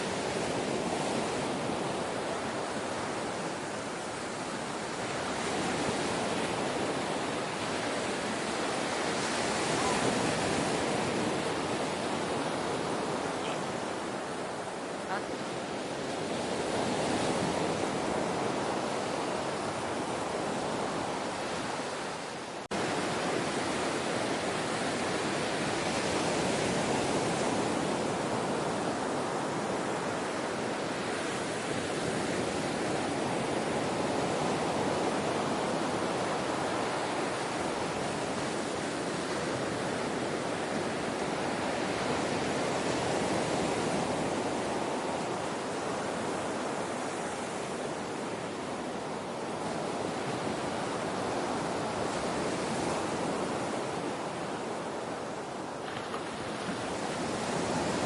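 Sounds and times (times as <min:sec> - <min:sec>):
ocean surf washing: 0:00.0 - 0:58.0.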